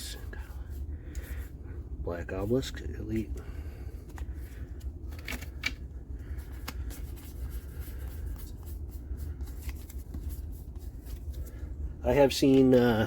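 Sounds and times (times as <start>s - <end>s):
low steady hum: 0.0s - 13.0s
cards sliding and ticking: 0.7s - 1.5s, 3.1s - 11.7s.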